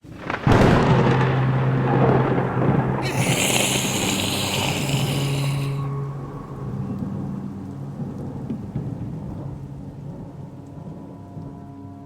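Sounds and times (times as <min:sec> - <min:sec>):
thunder rumbling: 0:00.1 - 0:10.5
high hiss: 0:03.0 - 0:06.0.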